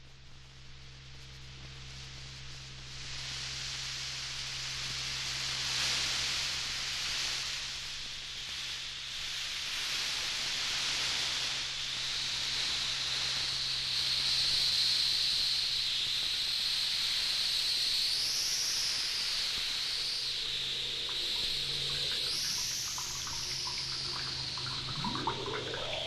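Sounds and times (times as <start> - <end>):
synthesizer filtered hissing noise: 0.0 - 26.0
faint low drone: 19.1 - 26.0.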